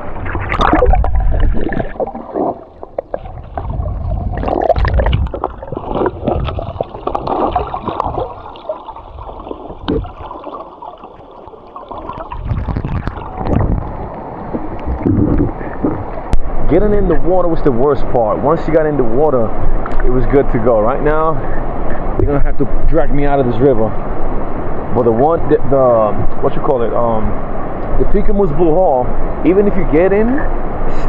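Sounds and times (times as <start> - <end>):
river water splashing: 0.0 - 16.7
wind buffeting microphone: 0.0 - 21.2.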